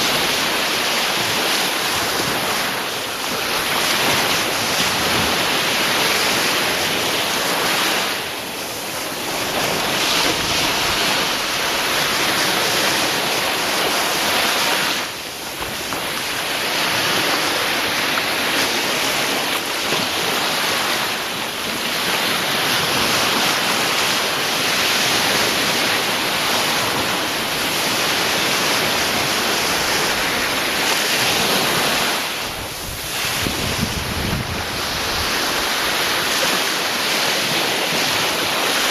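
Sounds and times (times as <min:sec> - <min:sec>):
sea waves washing in: 0:00.0 - 0:38.9.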